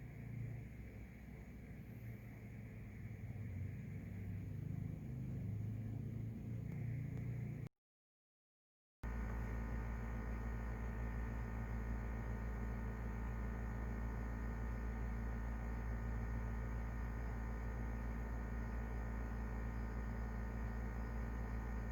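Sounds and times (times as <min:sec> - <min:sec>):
low electrical hum: 0:00.0 - 0:07.7, 0:09.0 - 0:21.9
faint steady tones: 0:09.0 - 0:21.9.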